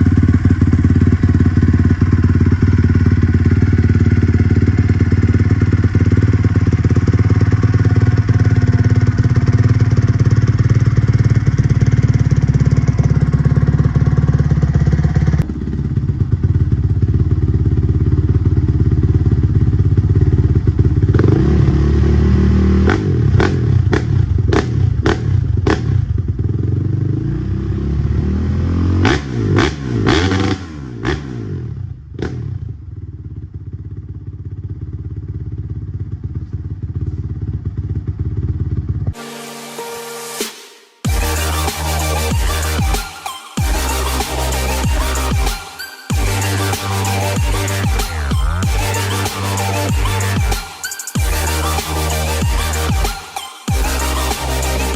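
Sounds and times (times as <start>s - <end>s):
dirt bike engine running: 0.0s - 27.3s, 32.0s - 39.2s, 46.1s - 50.6s
engine throttle blips: 39.0s - 54.9s.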